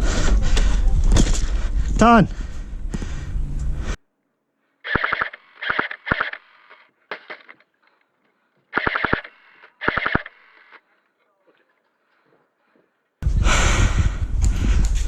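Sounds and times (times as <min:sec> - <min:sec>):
airsoft gun firing bursts: 0:04.9 - 0:07.6, 0:08.7 - 0:10.8.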